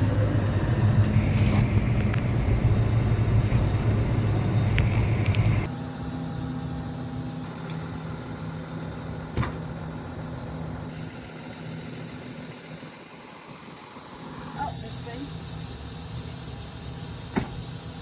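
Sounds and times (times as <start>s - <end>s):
tractor engine running: 1.1s - 18.0s
sharp click: 17.2s - 18.0s.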